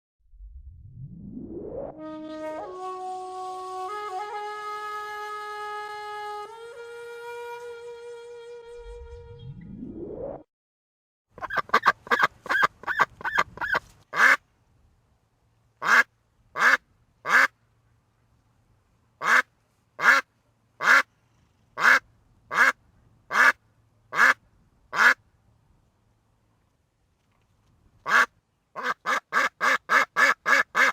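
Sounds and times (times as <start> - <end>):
duck quacking: 11.4 - 14.4, 15.8 - 17.6, 19.2 - 21.1, 21.8 - 25.2, 28.0 - 30.9.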